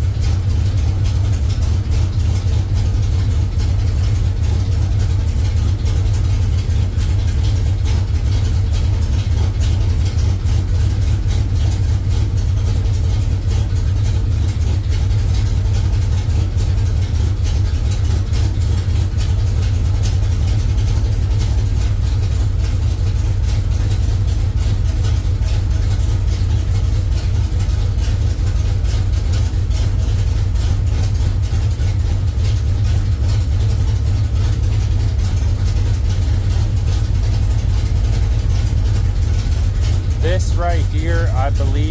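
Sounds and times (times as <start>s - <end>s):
truck engine idling: 0.0s - 41.9s.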